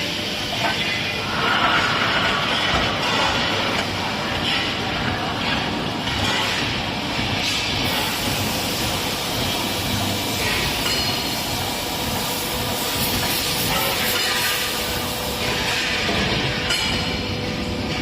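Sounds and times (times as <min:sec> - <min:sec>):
production line machinery running: 0:00.0 - 0:18.0
machinery hissing: 0:07.7 - 0:15.9.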